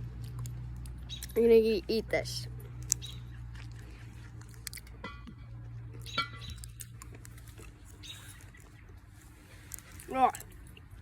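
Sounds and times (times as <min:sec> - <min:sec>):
steady low hum: 0:00.0 - 0:11.0
mouth sucking and chewing candy: 0:02.6 - 0:05.0, 0:06.0 - 0:11.0.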